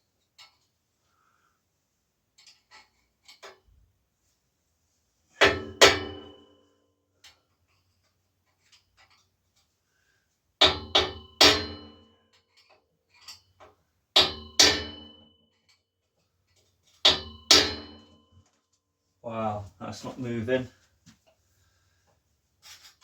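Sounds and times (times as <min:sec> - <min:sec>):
hammer striking metal: 0:05.4 - 0:06.4, 0:14.2 - 0:15.1, 0:17.1 - 0:18.0.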